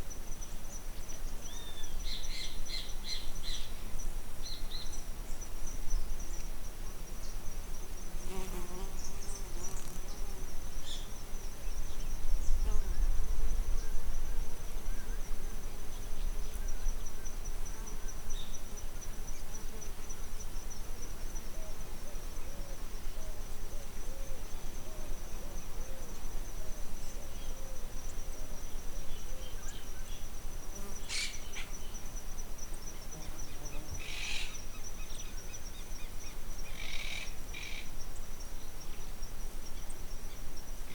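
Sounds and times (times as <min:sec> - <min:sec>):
high-pitched insect trill: 0:25.6 - 0:40.9.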